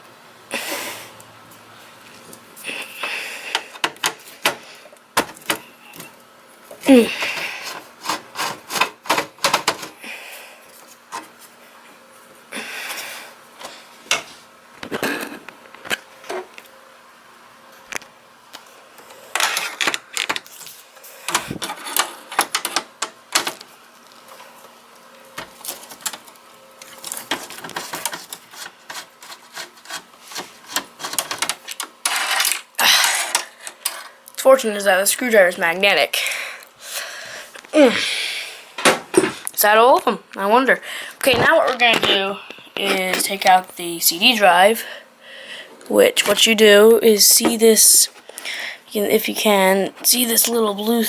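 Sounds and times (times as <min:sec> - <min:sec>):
screwdriver scraping rasps: 0:07.2 - 0:09.2, 0:27.4 - 0:34.0.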